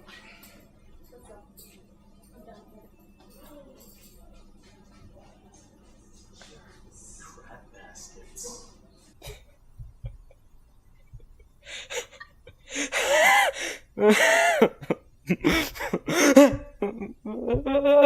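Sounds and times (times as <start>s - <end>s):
person gasping: 11.6s - 14.6s, 15.4s - 16.5s.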